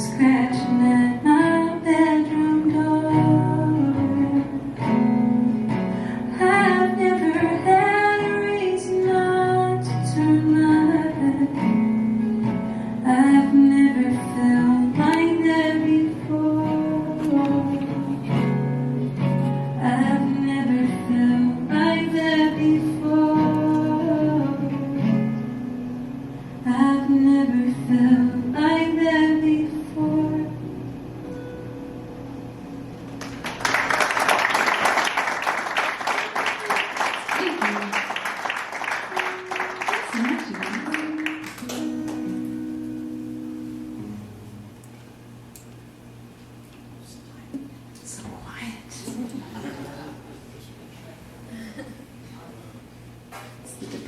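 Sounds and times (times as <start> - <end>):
woman singing: 0.0 - 4.9, 6.3 - 12.2, 13.0 - 18.4, 19.7 - 25.3, 26.6 - 30.7
guitar accompaniment: 0.0 - 47.9.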